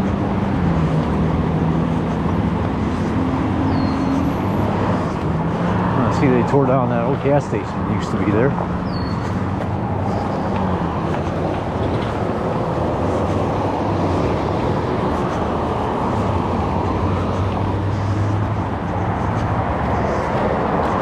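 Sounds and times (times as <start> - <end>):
car road and engine noise: 0.0 - 21.0.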